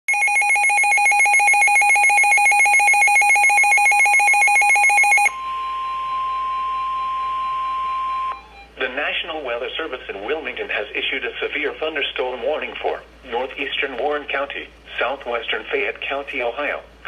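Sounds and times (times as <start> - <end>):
pulsing warble of beeps: 0.1 - 8.4
steady high warning tone: 0.1 - 9.1.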